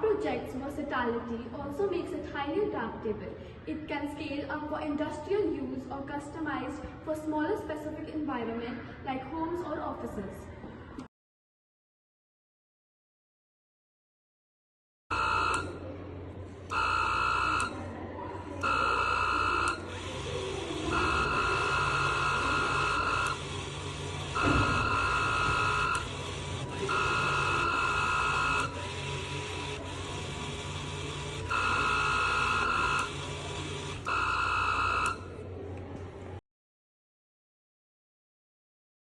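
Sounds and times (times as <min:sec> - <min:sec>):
electronic buzzer beeping: 0:15.1 - 0:15.7, 0:16.7 - 0:17.7, 0:18.6 - 0:19.8, 0:20.8 - 0:29.8, 0:30.5 - 0:35.3.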